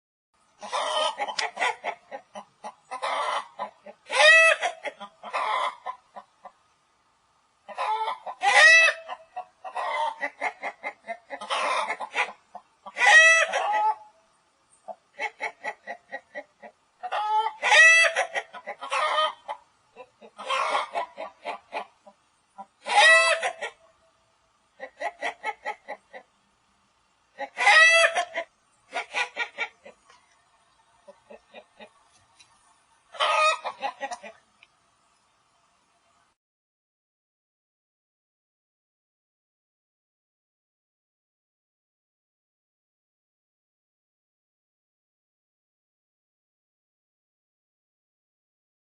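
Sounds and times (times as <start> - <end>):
hen cackling and squawking: 0.6 - 6.6, 7.6 - 14.2, 14.9 - 23.9, 24.7 - 26.4, 27.3 - 30.3, 31.0 - 32.1, 33.1 - 34.5.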